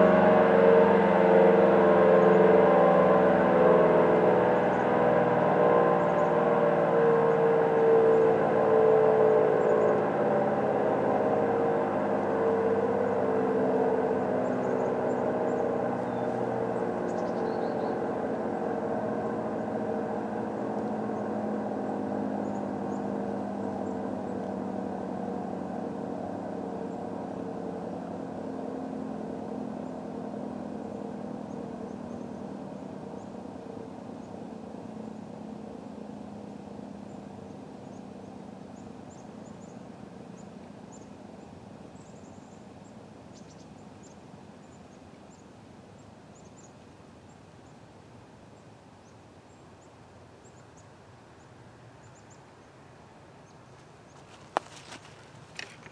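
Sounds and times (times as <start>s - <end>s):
dual-tone siren winding down: 0.0s - 24.5s.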